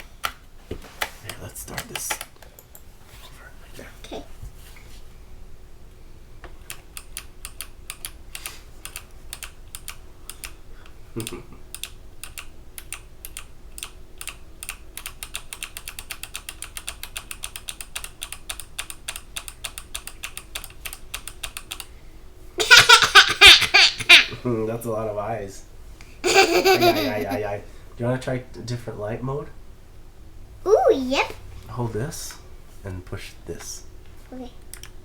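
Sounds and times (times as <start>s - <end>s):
mechanical keyboard clicks: 1.7s - 2.8s, 6.7s - 10.6s, 11.2s - 21.9s
child laughing: 22.6s - 24.4s, 26.2s - 27.5s.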